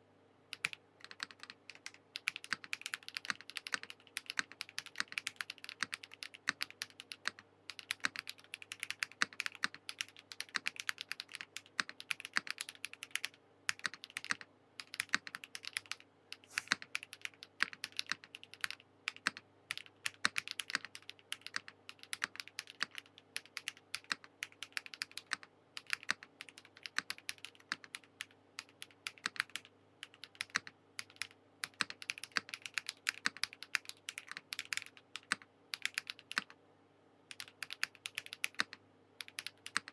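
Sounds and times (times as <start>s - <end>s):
fast typing on mechanical keyboard: 0.5s - 36.5s, 37.3s - 39.9s.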